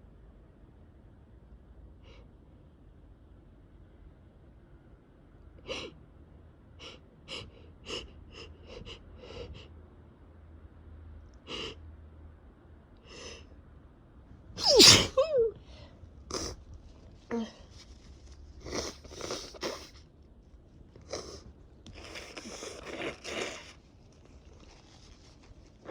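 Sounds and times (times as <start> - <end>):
person sneezing: 14.6 - 15.5.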